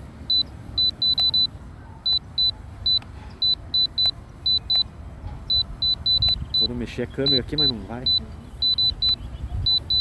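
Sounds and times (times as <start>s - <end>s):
short high beeps: 0.3s - 4.9s, 5.5s - 10.0s
wind rumble on microphone: 5.1s - 10.0s.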